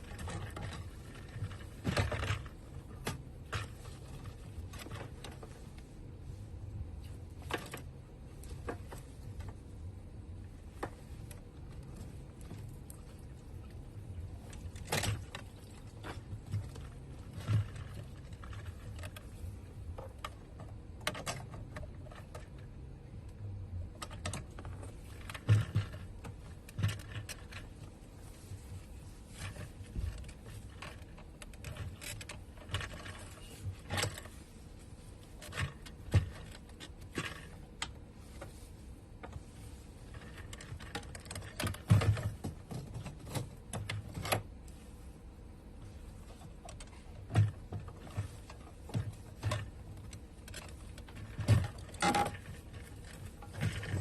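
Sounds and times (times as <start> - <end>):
plastic and metal parts knocking: 0.0 - 5.6, 14.3 - 22.9, 23.9 - 28.0, 29.3 - 34.4, 35.2 - 38.6, 40.1 - 44.6, 46.3 - 54.0.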